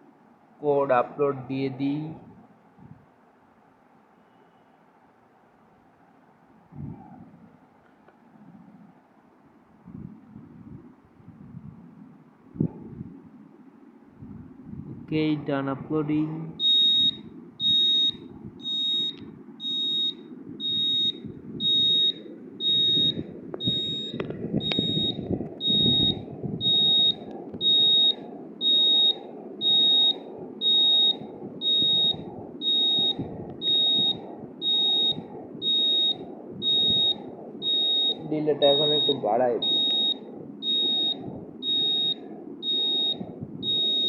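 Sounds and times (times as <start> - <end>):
high-pitched buzzer beeps: 16.6 - 44.0.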